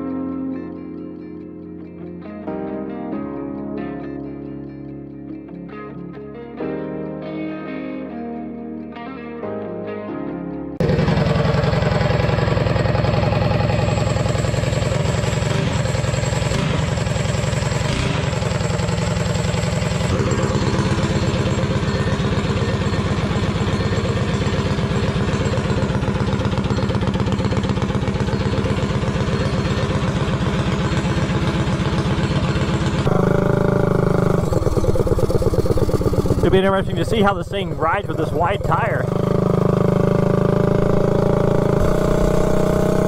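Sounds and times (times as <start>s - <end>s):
mini bike engine running: 10.8s - 43.0s.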